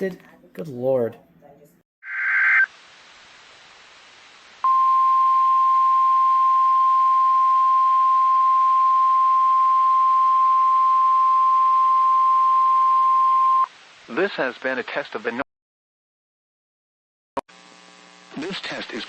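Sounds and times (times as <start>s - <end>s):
faint radio hiss: 1.1s - 5.6s, 13.0s - 15.4s, 17.6s - 19.0s.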